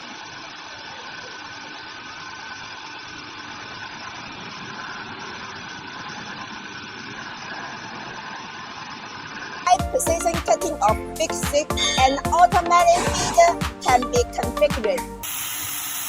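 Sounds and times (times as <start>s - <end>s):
band saw running: 11.7s - 14.0s.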